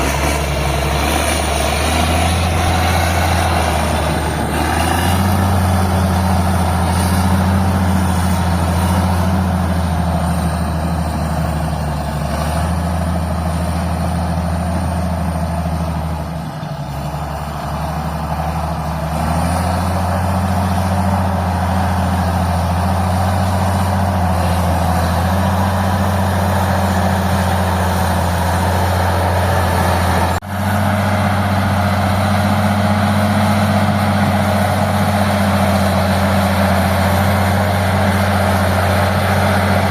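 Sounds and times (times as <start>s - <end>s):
crawler tractor diesel engine: 0.0s - 39.9s.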